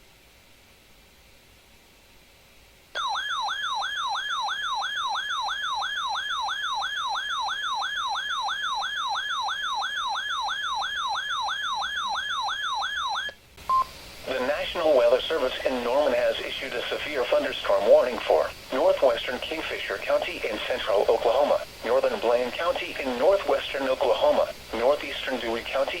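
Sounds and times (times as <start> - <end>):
electronic warble siren: 3.0 - 13.4.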